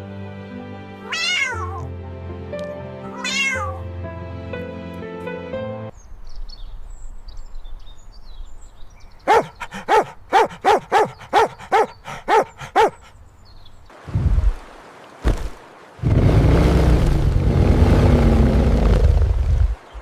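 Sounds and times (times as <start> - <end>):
dog barking: 9.3 - 13.1.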